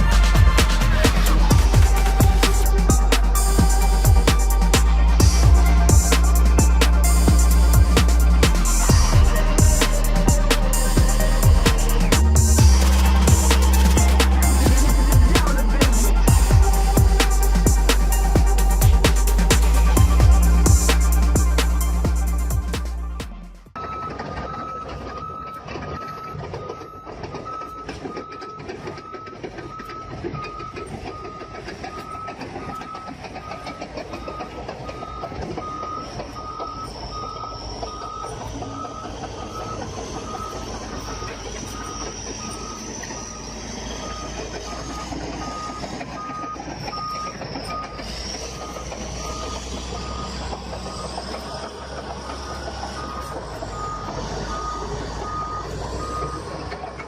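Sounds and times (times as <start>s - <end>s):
high whine: 0.0s - 23.8s
heavy vehicle engine rumble: 0.0s - 57.0s
reversing alarm beeping: 0.0s - 57.0s.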